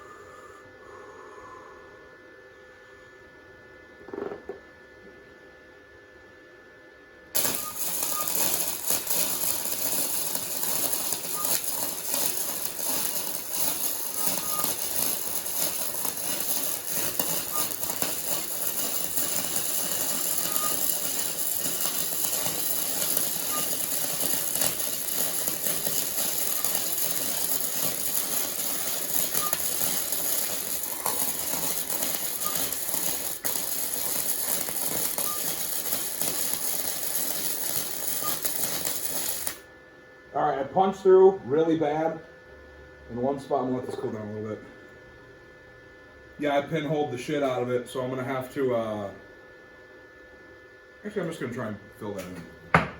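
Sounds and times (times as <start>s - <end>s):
welding arc crackling: 7.4s - 39.7s.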